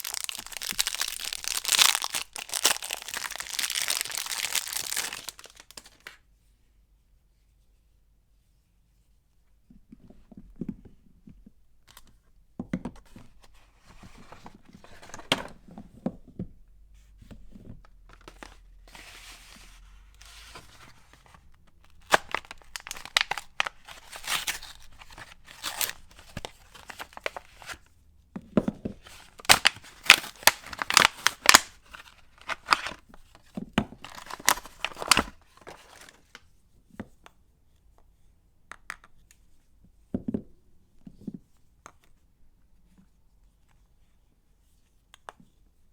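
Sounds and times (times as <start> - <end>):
wrapper tearing and crinkling: 0.0 - 6.2, 21.8 - 27.4, 29.3 - 33.0, 34.0 - 36.2.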